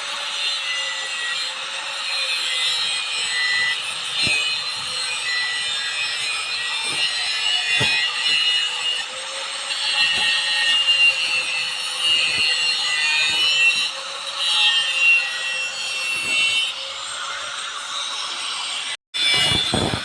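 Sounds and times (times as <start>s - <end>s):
abrasive tool scraping steel: 0.0s - 20.0s.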